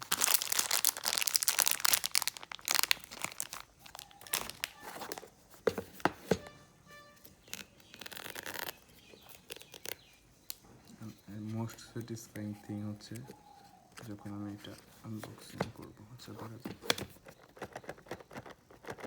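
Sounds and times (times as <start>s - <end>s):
plastic packaging crinkling: 0.0s - 5.4s, 7.3s - 11.8s.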